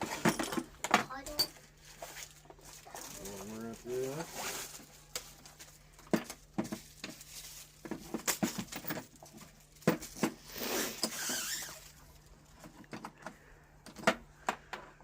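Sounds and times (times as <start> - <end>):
scraping sliding sound: 10.4 - 11.7
plastic parts clicking and knocking: 12.5 - 15.0.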